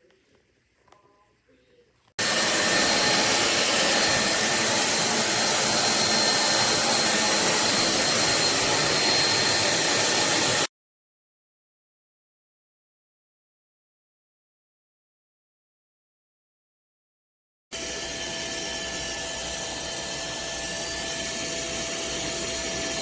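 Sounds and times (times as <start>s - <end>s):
vacuum cleaner motor running: 2.2s - 10.7s, 17.8s - 23.0s.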